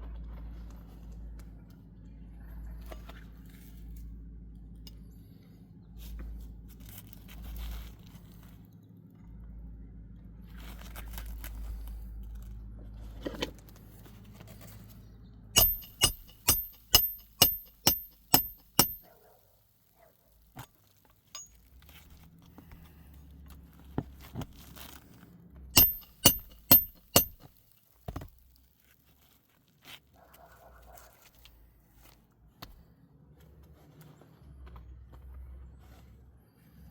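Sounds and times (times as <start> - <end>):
sharp ringing metallic taps: 15.6 - 19.1, 21.4 - 21.6, 25.8 - 27.5.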